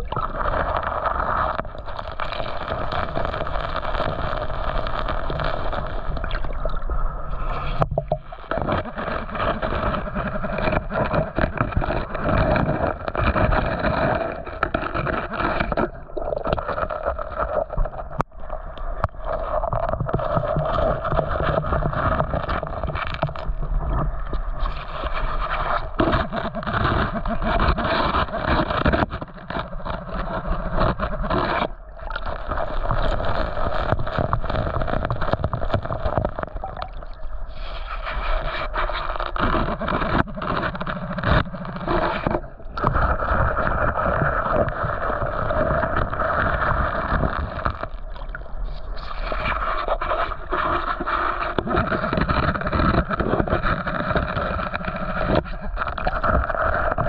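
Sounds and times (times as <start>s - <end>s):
knocks and scrapes: 7.3s - 18.3s, 19.0s - 57.0s.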